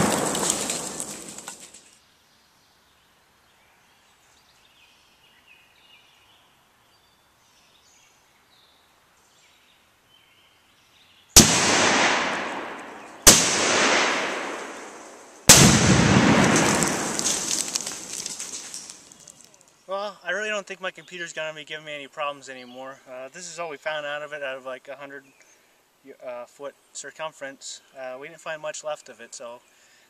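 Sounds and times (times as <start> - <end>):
rifle shots with echo: 0.0 - 1.3, 11.4 - 18.2.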